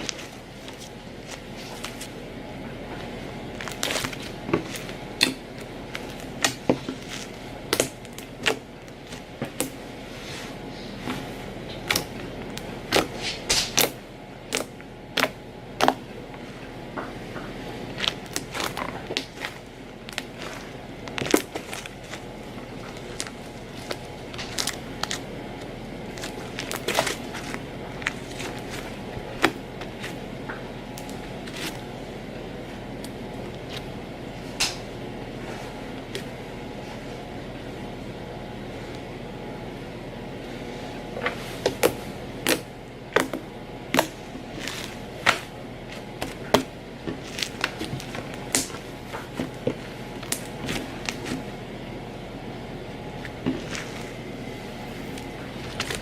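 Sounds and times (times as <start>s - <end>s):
slime crackling and popping: 3.5s - 9.8s, 17.8s - 30.2s, 41.7s - 51.4s.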